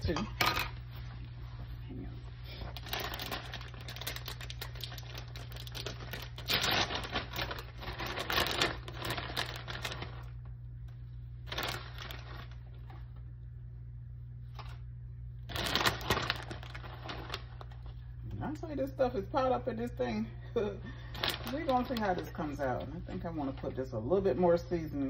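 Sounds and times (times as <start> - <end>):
steady low hum: 0.0 - 25.0
crinkling rustling handling noise: 2.2 - 10.6, 11.4 - 13.2, 15.5 - 18.0, 21.0 - 24.8.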